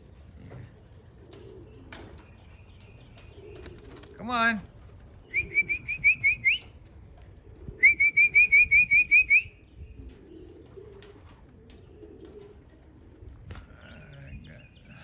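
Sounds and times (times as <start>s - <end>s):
person whistling rising notes: 7.8s - 9.5s.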